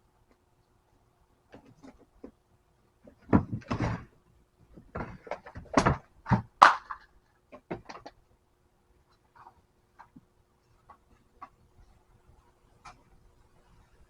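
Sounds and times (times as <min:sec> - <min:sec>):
hard objects knocking and clattering: 0:03.1 - 0:04.1, 0:04.8 - 0:08.1.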